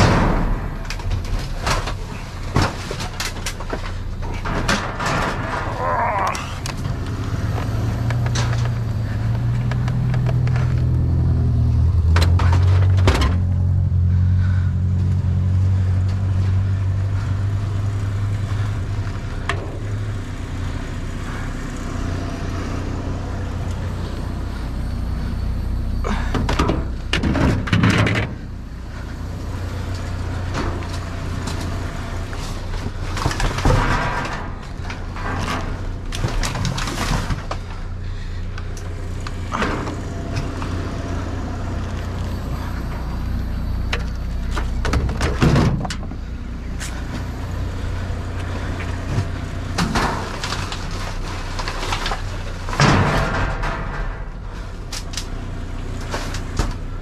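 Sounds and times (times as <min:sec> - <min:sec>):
objects clattering in metal dumpster: 0:00.0 - 0:13.7, 0:15.6 - 0:57.0
vehicle engine rumble: 0:00.0 - 0:57.0.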